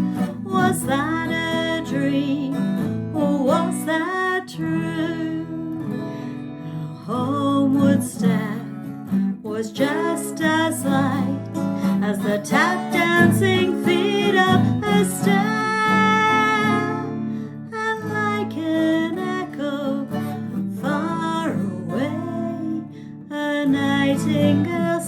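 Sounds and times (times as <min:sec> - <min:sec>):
person singing with vibrato: 0:00.0 - 0:06.1, 0:07.0 - 0:25.0
plucked guitar: 0:00.0 - 0:25.0.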